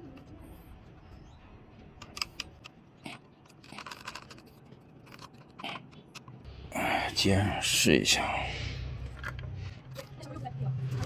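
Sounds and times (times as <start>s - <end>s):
clicks of plastic and metal parts: 2.0s - 6.4s.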